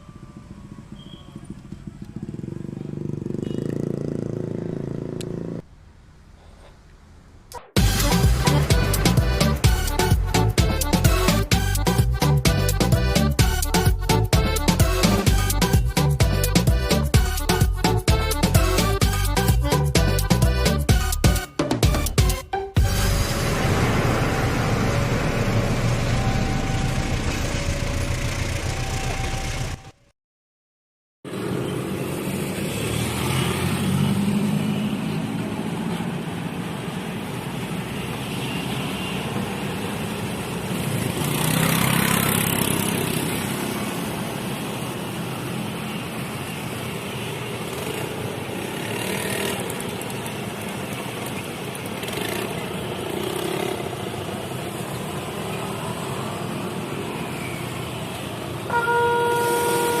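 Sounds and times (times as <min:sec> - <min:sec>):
cars and motorbikes passing: 0:00.0 - 0:06.0, 0:07.6 - 0:19.6, 0:22.8 - 0:30.0, 0:31.3 - 1:00.0
loud vehicle passing: 0:01.8 - 0:05.6, 0:22.8 - 0:29.8, 0:31.3 - 0:38.1, 0:39.5 - 0:50.9, 0:51.8 - 1:00.0
electronic crossing warning alarm: 0:58.7 - 1:00.0.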